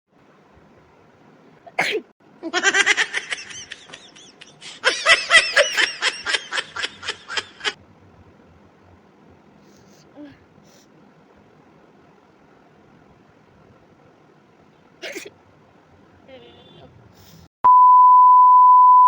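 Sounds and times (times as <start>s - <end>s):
person sneezing: 1.7s - 2.1s, 15.0s - 15.3s
high-pitched laughter: 2.4s - 7.8s.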